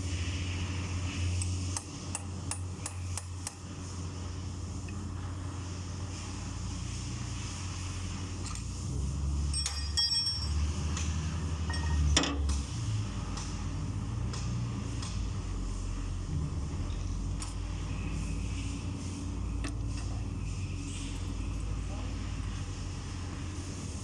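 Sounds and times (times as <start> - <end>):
low machine hum: 0.0 - 24.0
metal tools clinking: 9.5 - 10.6, 11.7 - 12.0, 21.1 - 23.4.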